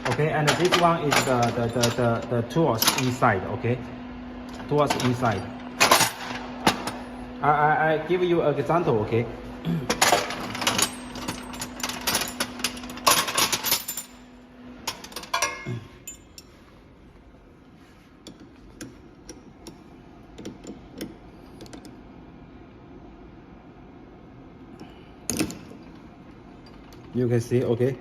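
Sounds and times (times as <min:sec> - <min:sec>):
metal tools clinking and clicking: 0:00.0 - 0:03.3, 0:04.5 - 0:07.0, 0:09.9 - 0:14.2, 0:14.9 - 0:16.6
low steady hum: 0:00.0 - 0:28.0.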